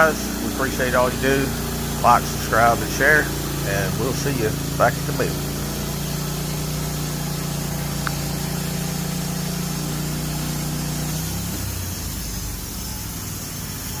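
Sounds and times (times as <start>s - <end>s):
engine idling hum: 0.0s - 14.0s.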